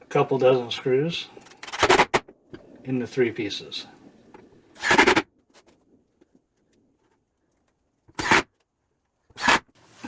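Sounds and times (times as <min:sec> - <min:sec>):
power driver driving screws into wood: 0:04.8 - 0:05.2, 0:08.1 - 0:08.5, 0:09.4 - 0:09.7.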